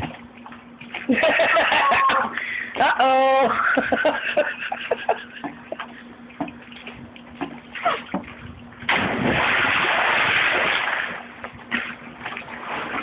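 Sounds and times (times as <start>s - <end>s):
water sloshing: 4.7s - 13.0s
big splash into pool: 8.9s - 11.4s.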